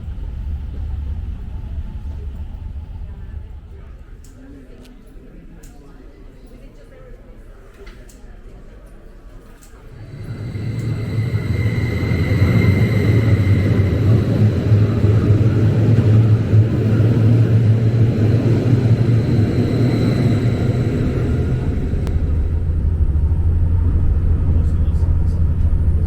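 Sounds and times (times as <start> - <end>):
vehicle running low rumble: 0.0 - 4.3, 9.9 - 26.0
faint high whine: 9.9 - 26.0.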